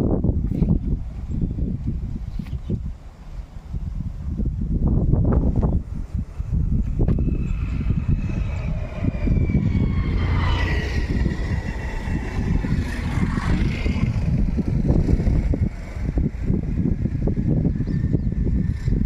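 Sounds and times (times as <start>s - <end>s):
engine passing by: 5.8s - 19.0s.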